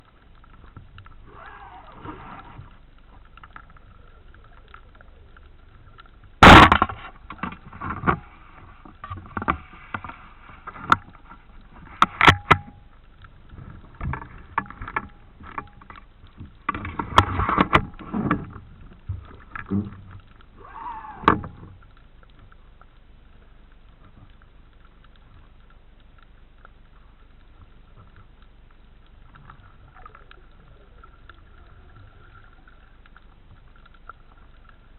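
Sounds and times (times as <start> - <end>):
faint steady underwater hum: 0.0 - 34.9
rushing water: 0.0 - 34.9
loud sudden crack: 6.4 - 7.0.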